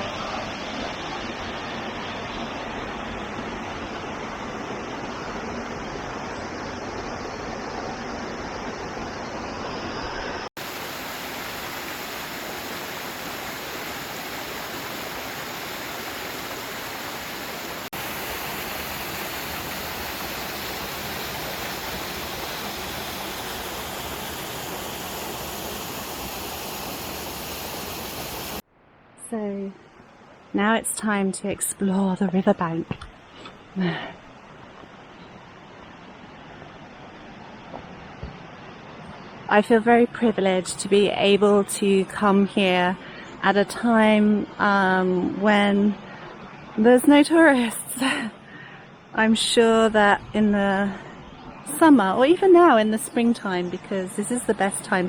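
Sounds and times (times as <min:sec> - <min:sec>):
waterfall rushing: 0:05.0 - 0:28.6.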